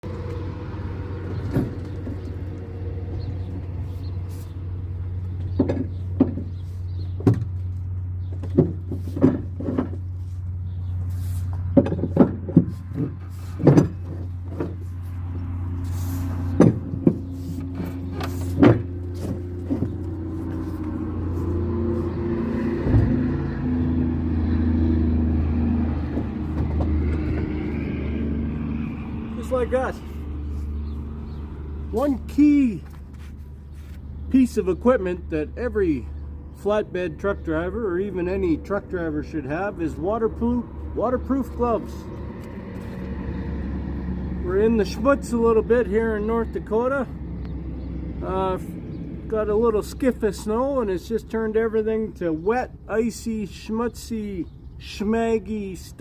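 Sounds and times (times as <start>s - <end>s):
truck engine humming: 0.0s - 56.0s
sharp clicks and knocks: 5.4s - 7.7s, 11.6s - 14.8s, 16.5s - 20.1s.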